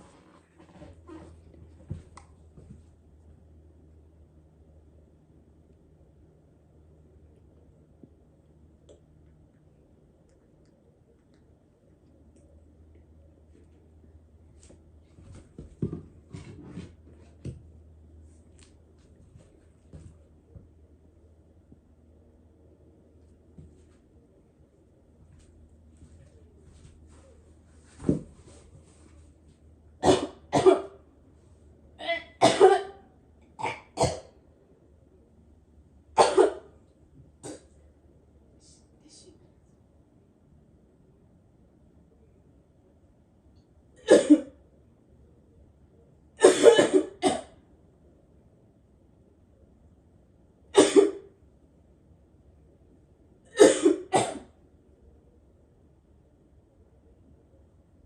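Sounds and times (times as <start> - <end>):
person coughing: 32.0 - 33.0, 44.0 - 44.5, 46.4 - 47.5, 53.5 - 54.5.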